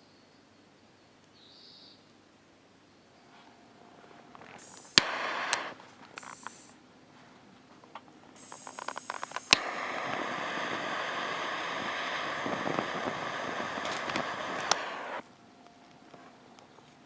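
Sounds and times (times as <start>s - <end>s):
food sizzling in a pan: 4.6s - 6.7s, 8.4s - 15.2s
sharp click: 4.6s - 6.7s, 8.4s - 15.2s.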